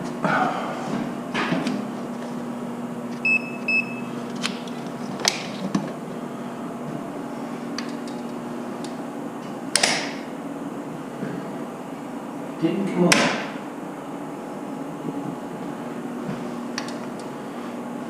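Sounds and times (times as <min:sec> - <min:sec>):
steady electrical hum: 0:00.0 - 0:18.0
short electronic beeps: 0:03.2 - 0:04.1.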